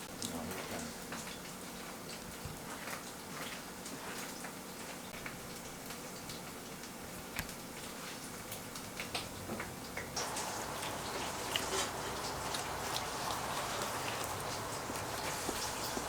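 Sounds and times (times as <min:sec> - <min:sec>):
low steady cooking hiss: 0:00.0 - 0:16.0
food popping and ticking: 0:10.2 - 0:16.0.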